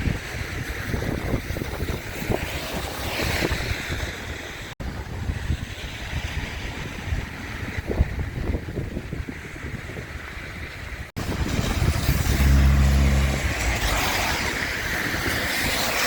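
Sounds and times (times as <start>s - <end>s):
wind buffeting microphone: 0.0s - 16.0s
floodwater rushing: 11.2s - 16.0s.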